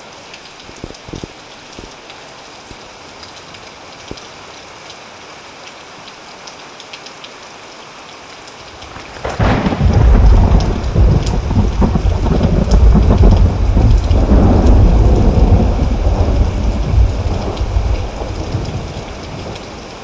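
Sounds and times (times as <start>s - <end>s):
steady rain: 0.0s - 20.0s
deep thunder rumble: 9.0s - 19.8s.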